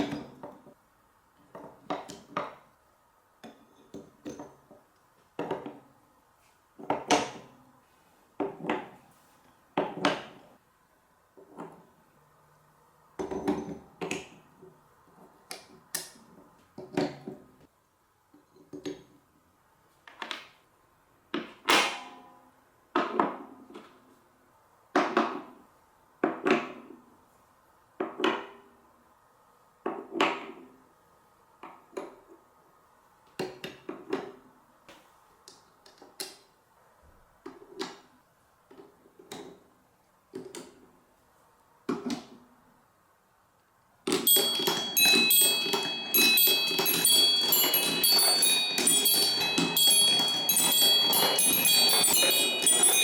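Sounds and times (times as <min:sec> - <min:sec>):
marbles clacking on a marble run: 0:44.1 - 0:53.0.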